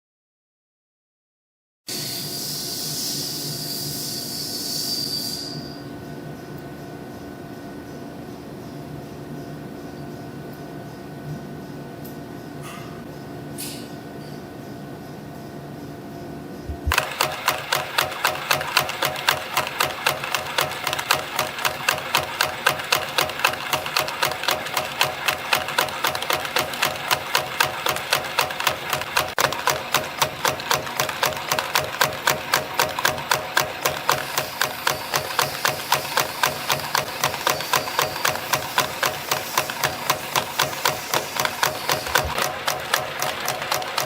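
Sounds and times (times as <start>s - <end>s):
machine hum: 14.6s - 44.0s
fast mechanical clatter: 16.7s - 44.0s.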